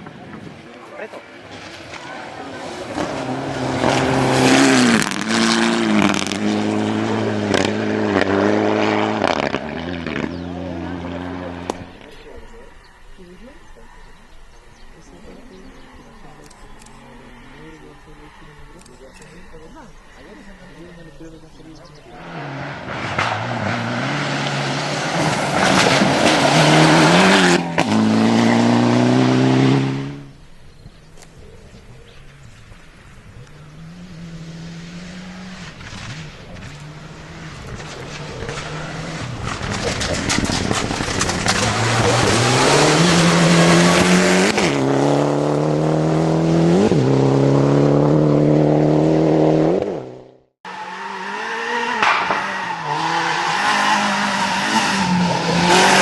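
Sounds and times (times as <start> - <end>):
rally car engine revving: 0.0 - 56.0
sharp exhaust cracks: 35.2 - 44.9
sharp crack: 52.0 - 52.6.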